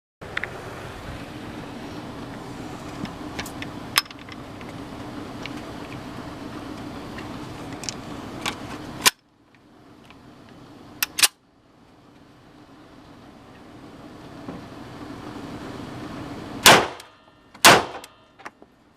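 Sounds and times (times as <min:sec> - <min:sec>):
steady low hum: 0:00.2 - 0:18.9
pistol shots: 0:16.6 - 0:18.2.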